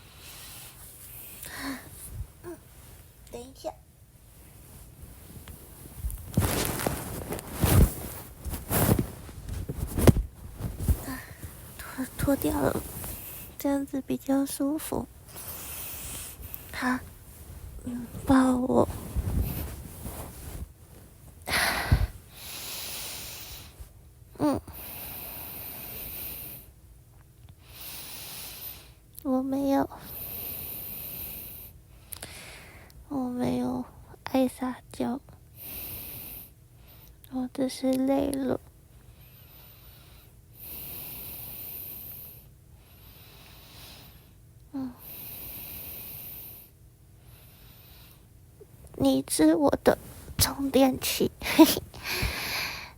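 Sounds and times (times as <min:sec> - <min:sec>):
woman breathing heavily: 0:00.0 - 0:02.8, 0:06.5 - 0:13.6, 0:21.5 - 0:23.8, 0:51.4 - 0:52.9
small vocal sound: 0:01.4 - 0:02.7
rustling bump against microphone: 0:04.3 - 0:13.6, 0:16.1 - 0:22.2.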